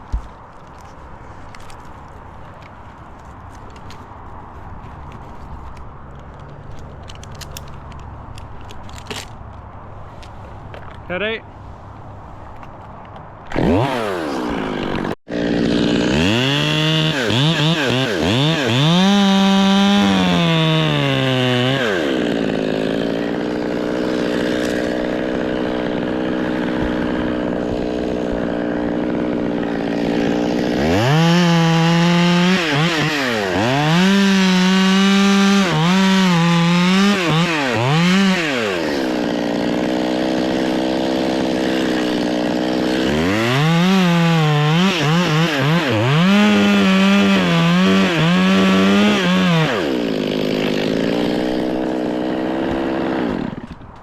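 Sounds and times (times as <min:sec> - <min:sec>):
chainsaw revving: 0:13.5 - 0:53.8
chainsaw idling: 0:13.6 - 0:53.8.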